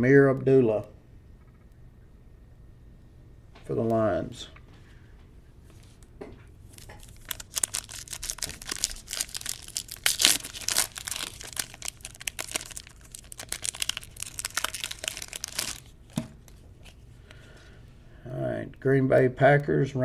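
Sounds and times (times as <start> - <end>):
wrapper being torn and crinkled: 6.7 - 17.1.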